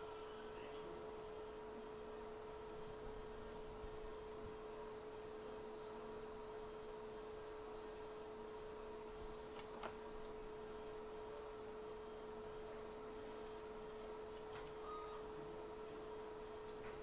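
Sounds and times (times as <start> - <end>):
faint electrical hum: 0.0 - 17.0.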